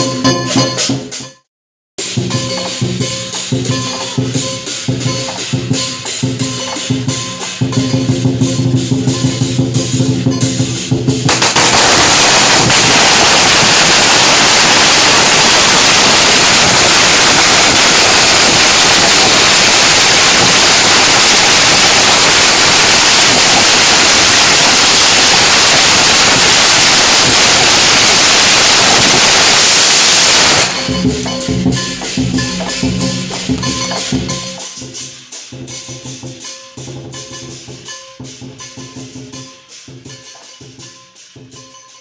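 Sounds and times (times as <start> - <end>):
firecrackers crackling: 2.0 - 42.0.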